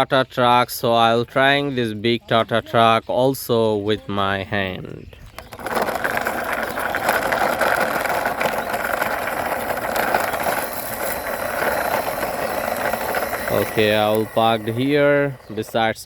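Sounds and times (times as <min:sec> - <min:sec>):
toy truck wheels rattling: 0:05.2 - 0:16.0.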